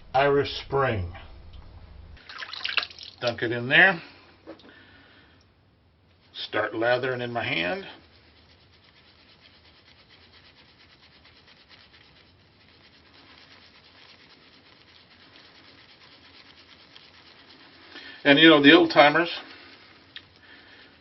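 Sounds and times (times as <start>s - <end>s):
soap rubbing on wet palm: 6.1s - 21.0s.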